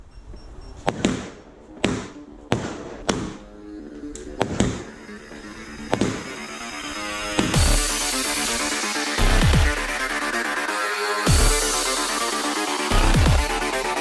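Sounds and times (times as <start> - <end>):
fireworks bangs: 0.8 - 3.5, 4.4 - 5.2, 5.8 - 9.3
electronic music: 2.1 - 14.0.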